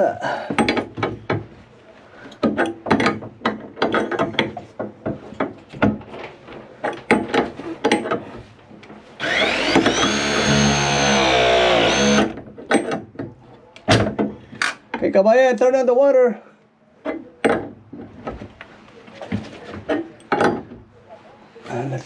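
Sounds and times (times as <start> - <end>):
knocks and clicks of handling tool: 0.5 - 1.6, 2.3 - 10.2, 12.1 - 15.0, 17.0 - 18.7, 19.3 - 20.9
crimping tool motor whine: 9.2 - 12.4.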